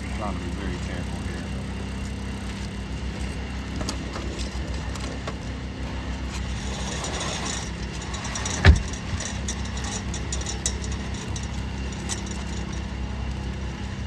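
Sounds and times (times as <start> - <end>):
low engine-like hum: 0.0 - 14.0
shingles scraping and clicking: 2.7 - 14.0.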